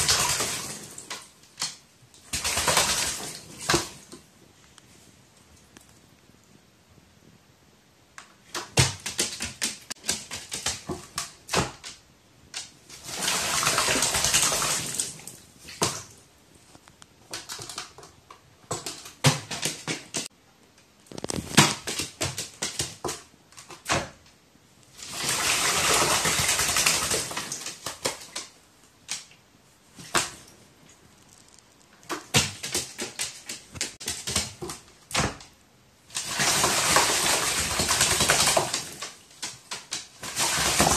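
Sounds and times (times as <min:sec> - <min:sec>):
bird splashing water: 0:25.0 - 0:29.2, 0:36.1 - 0:40.9.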